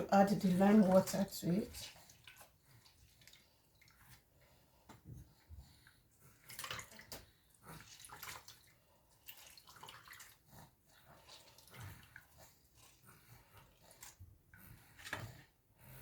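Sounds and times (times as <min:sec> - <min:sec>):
water splashing and dripping: 0:01.6 - 0:04.2, 0:06.5 - 0:10.5.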